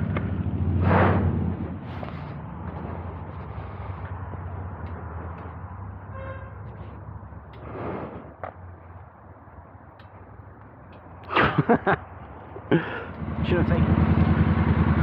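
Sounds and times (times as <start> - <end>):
motorcycle engine at low revs: 0.0 - 6.0, 13.0 - 15.0.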